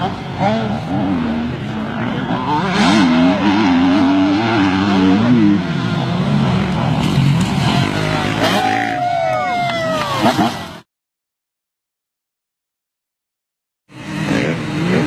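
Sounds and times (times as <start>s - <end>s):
motocross bike engine revving: 0.0s - 9.2s, 13.9s - 15.0s.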